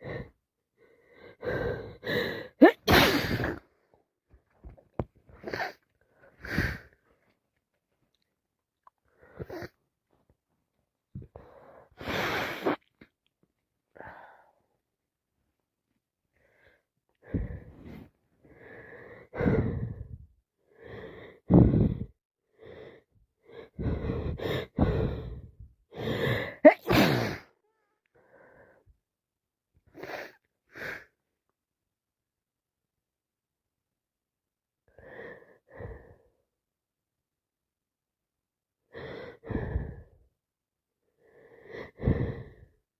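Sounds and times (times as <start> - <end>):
woman sneezing: 2.6 - 3.6, 26.6 - 27.5
wheezy breathing: 16.4 - 27.5, 38.9 - 40.2, 41.2 - 42.8.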